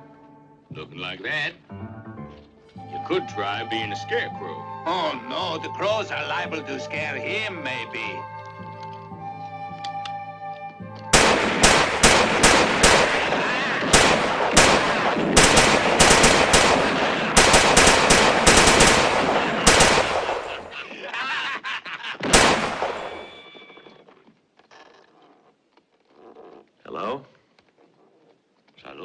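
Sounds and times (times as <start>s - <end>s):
rapid gunfire with echoing cracks: 11.2s - 20.9s, 22.2s - 23.5s.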